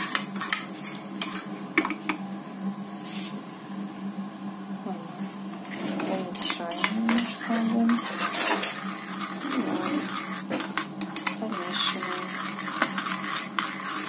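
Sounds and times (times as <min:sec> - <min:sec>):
utensil scraping against pot: 0:00.0 - 0:01.5, 0:05.6 - 0:14.0.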